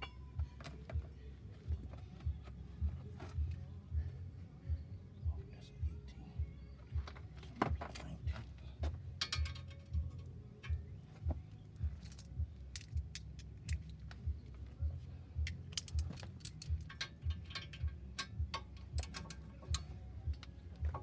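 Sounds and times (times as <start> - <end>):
metal tools clinking: 9.1 - 10.9, 15.4 - 21.0.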